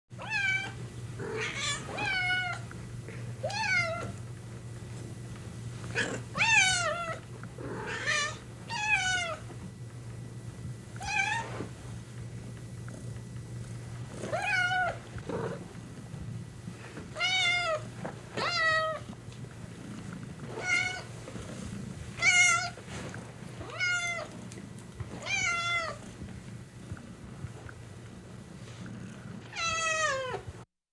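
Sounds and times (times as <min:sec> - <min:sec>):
cat meowing: 0:00.2 - 0:02.6, 0:29.5 - 0:30.4
cat purring: 0:00.4 - 0:30.6.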